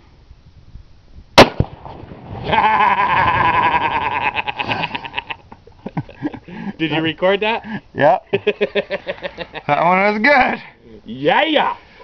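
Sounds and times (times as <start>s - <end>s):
rifle shot: 1.4s - 2.5s
explosive detonating: 1.4s - 4.1s.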